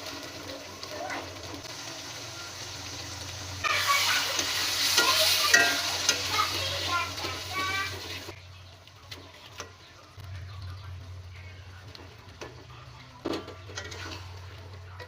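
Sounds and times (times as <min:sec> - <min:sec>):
kitchen utensils clicking: 0:03.8 - 0:07.8, 0:13.2 - 0:15.0.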